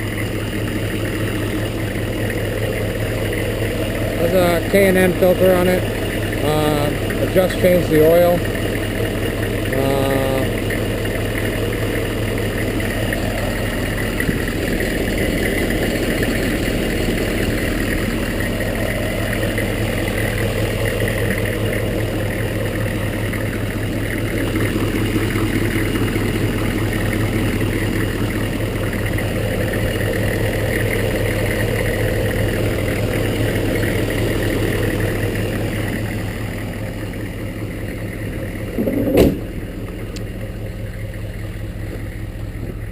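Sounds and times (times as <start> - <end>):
diesel engine idling: 0.0 - 42.9.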